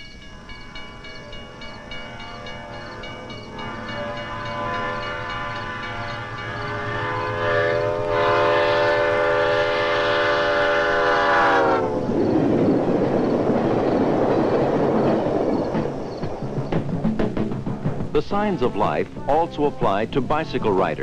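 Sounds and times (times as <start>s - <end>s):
crossing signal bell dinging: 0.0s - 8.3s
train rumbling by: 0.0s - 21.0s
locomotive air horn: 1.8s - 12.1s.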